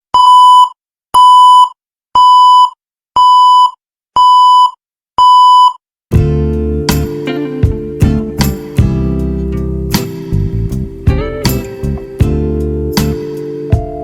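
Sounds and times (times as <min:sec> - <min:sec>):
music with guitar: 0:06.1 - 0:14.0.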